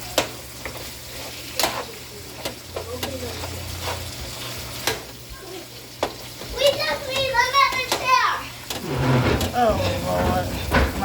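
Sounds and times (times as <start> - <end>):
ground beef stirred in a pan: 0.0 - 6.6
faint frying sizzle: 0.0 - 11.0.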